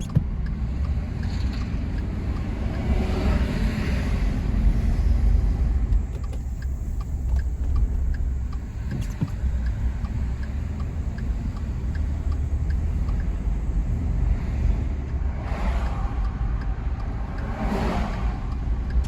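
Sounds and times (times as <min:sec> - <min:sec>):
low steady rumble: 0:00.0 - 0:19.0
faint even ticking: 0:05.8 - 0:19.0.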